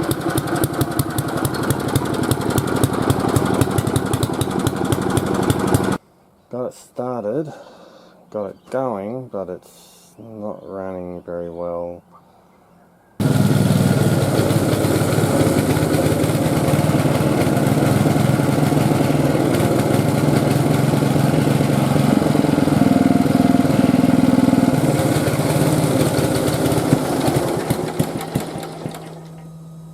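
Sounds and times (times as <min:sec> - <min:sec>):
mower engine running unevenly: 0:00.0 - 0:06.0, 0:13.2 - 0:29.5.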